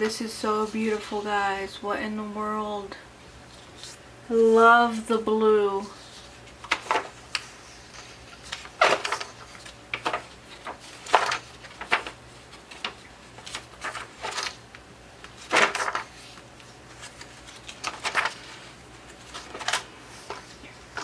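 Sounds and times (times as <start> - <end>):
paper pages rustling: 5.8 - 21.0.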